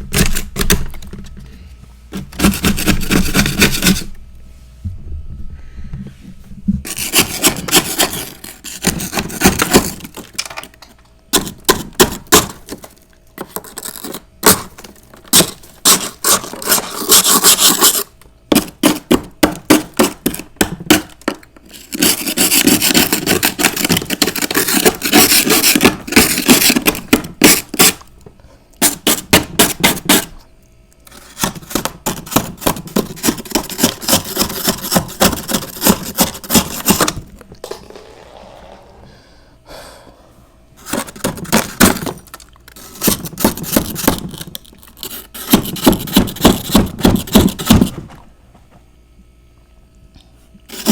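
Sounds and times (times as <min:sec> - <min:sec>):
frost being chewed and crunched: 0:42.2 - 0:42.8.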